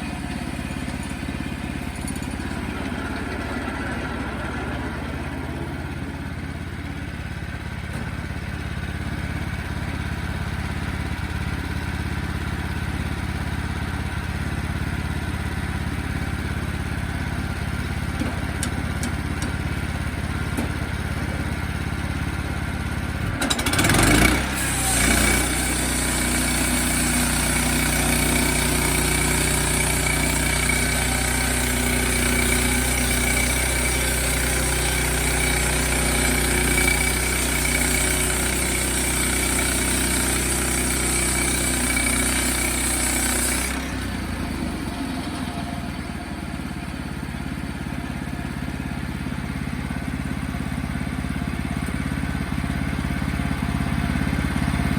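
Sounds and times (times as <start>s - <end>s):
sawmill engine running: 0.0s - 54.9s
high whine: 1.0s - 7.7s.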